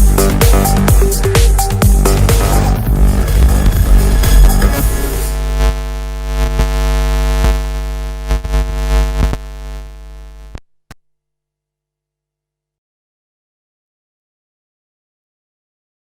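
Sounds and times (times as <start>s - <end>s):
electronic dance music: 0.0s - 6.9s.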